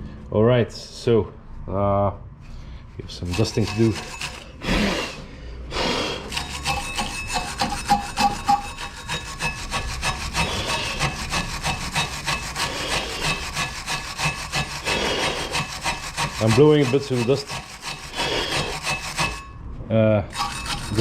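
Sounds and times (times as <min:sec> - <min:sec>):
brush scrubbing brake parts: 0:03.1 - 0:05.3, 0:06.0 - 0:19.6, 0:20.3 - 0:21.0.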